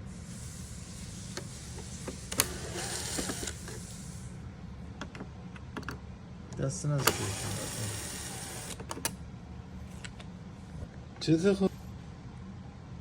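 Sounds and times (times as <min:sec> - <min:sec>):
faint tool whir: 0:00.0 - 0:04.4, 0:06.8 - 0:09.2.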